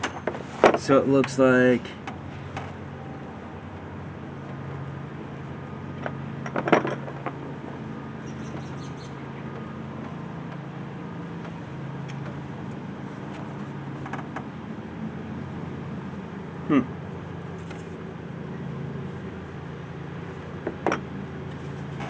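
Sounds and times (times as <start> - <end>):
truck engine idling: 0.0 - 22.0
handling clicks and knocks: 6.0 - 7.4, 11.3 - 14.5.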